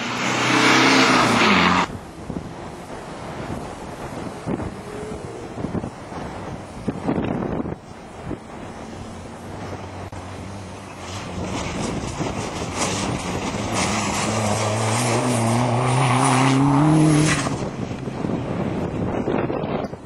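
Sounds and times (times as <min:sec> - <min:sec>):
off-road car engine under hard throttle: 0:00.0 - 0:20.0.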